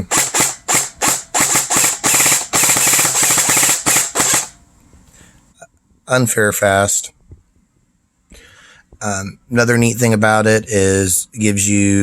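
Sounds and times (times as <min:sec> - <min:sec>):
airsoft gun rapid firing: 0:00.0 - 0:04.6.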